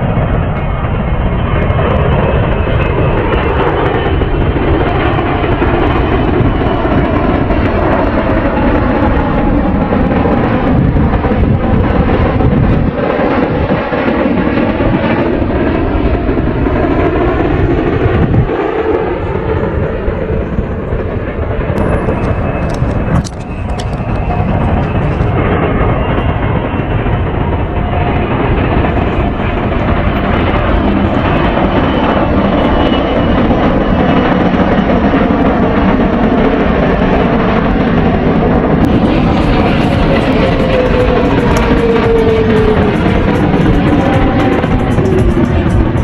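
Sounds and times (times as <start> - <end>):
jet airliner roar: 0.0 - 46.0.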